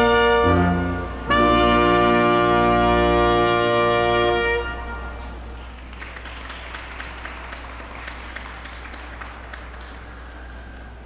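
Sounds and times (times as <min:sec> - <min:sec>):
brass ensemble chord: 0:00.0 - 0:05.5
audience applause: 0:05.4 - 0:11.0.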